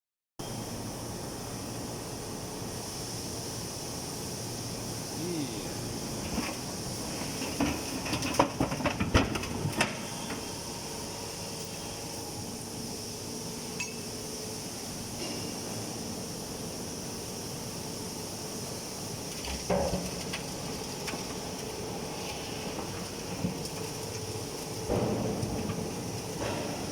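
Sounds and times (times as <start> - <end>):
hydraulic baler humming and hissing: 0.4 - 26.9.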